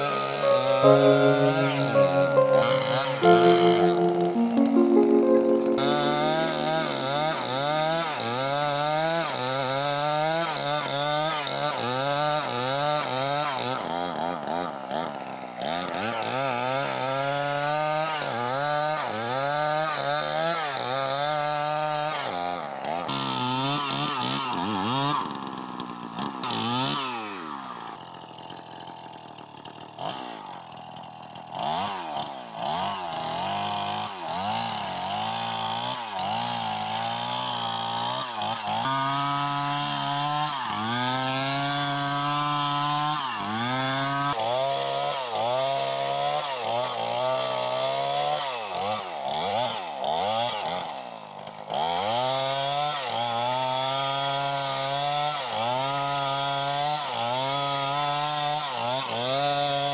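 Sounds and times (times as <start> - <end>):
chainsaw revving: 28.4 - 59.9.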